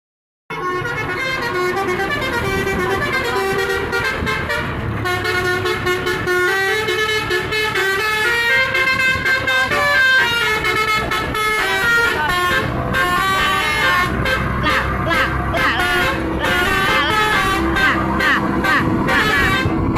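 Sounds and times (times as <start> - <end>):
multi-tone air horn tune: 0.5 - 19.9
low rumble: 8.7 - 19.9.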